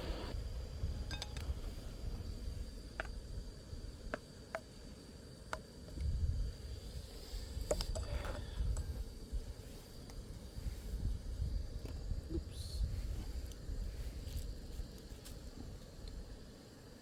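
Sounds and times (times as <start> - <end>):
low steady rumble: 0.0 - 4.1.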